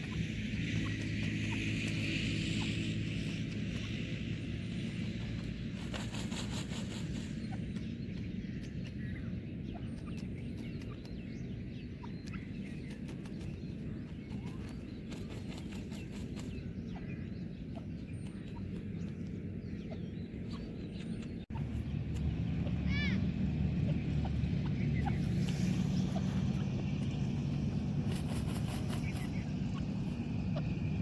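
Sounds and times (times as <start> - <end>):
rapid ticks: 0.0 - 8.9, 24.1 - 30.8
birds chirping and clucking: 0.0 - 31.0
low outdoor rumble: 0.0 - 31.0.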